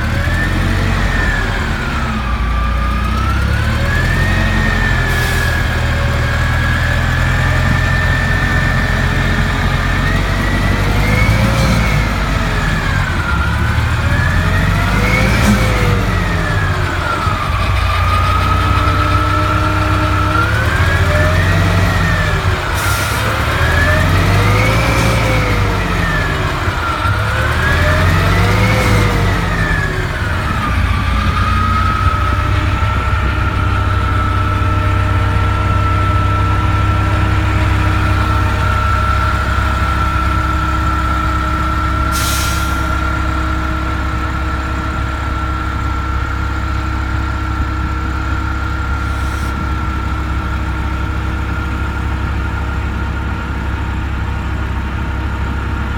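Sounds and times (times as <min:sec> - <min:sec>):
bus engine revving and idling: 0:00.0 - 0:55.9
high engine whine: 0:00.0 - 0:55.9
air brake hiss: 0:42.1 - 0:43.0.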